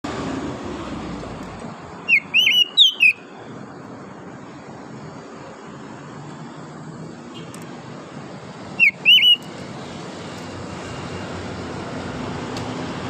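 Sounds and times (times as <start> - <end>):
bird singing whistled notes: 2.1 - 3.3, 8.8 - 9.5.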